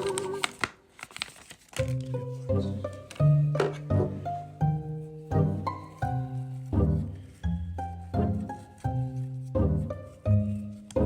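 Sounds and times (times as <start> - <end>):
pizzicato string music with bass: 2.0 - 11.0.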